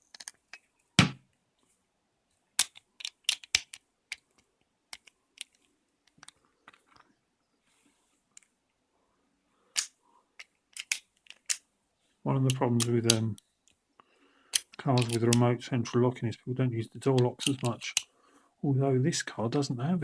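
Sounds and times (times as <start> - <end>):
metal tools clicking on lock: 2.6 - 4.2, 9.8 - 11.6, 12.5 - 13.4, 14.5 - 15.4, 17.2 - 18.1.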